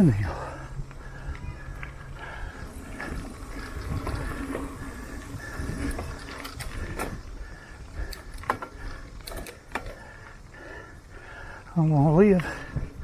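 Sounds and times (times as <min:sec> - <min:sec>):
bike rolling over dirt trail: 0:00.3 - 0:10.4.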